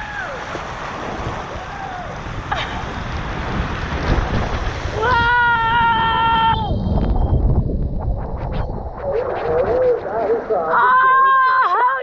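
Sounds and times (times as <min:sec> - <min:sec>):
rushing water: 0:00.0 - 0:06.5
wind buffeting microphone: 0:00.0 - 0:11.3
person yelling: 0:05.0 - 0:06.7, 0:10.7 - 0:12.0.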